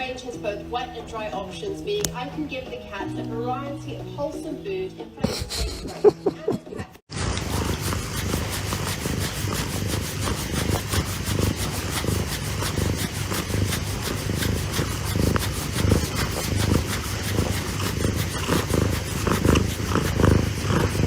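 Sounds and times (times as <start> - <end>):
cat purring: 5.2 - 21.0.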